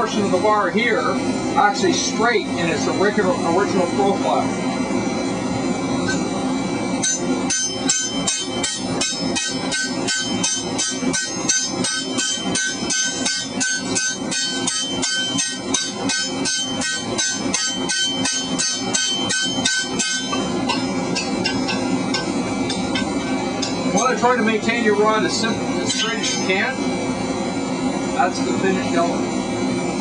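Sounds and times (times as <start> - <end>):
hammer striking hot steel: 6.9 - 26.9.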